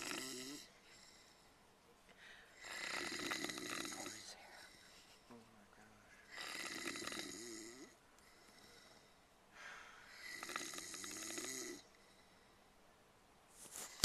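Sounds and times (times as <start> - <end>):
person snoring: 0.0 - 1.3, 2.6 - 5.0, 6.3 - 12.3.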